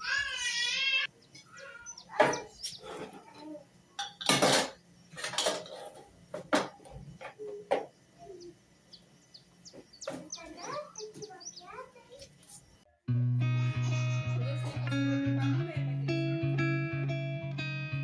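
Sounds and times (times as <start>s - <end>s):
dishes and utensils clattering: 2.1s - 7.9s.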